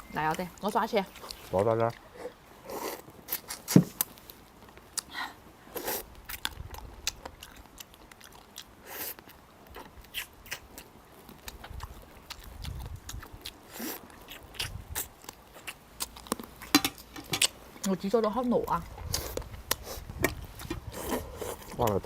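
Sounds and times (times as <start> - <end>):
biting and chewing: 0.3 - 5.1, 5.7 - 22.0.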